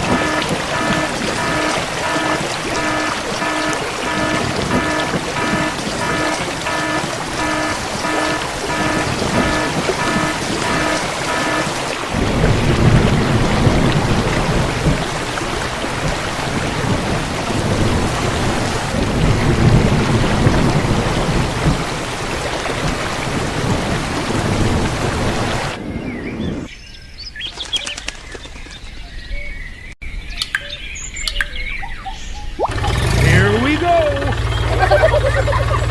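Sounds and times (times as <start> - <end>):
deep rolling thunder: 0.0 - 26.7
heavy rain: 0.0 - 26.7, 32.7 - 35.9.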